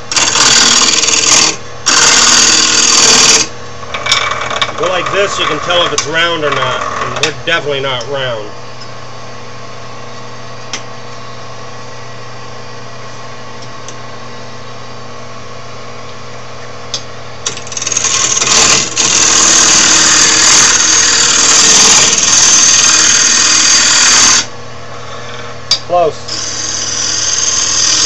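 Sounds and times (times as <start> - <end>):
turning tool cutting wood: 0.0 - 3.5, 4.1 - 7.4, 17.5 - 24.5, 26.3 - 28.0
lathe motor humming: 17.6 - 25.4, 26.2 - 28.0.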